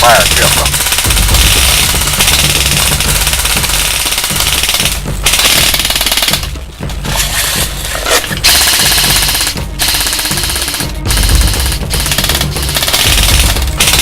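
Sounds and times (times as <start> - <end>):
rapid automatic gunfire: 0.0 - 6.6, 8.4 - 14.0
music with bass line: 0.0 - 14.0.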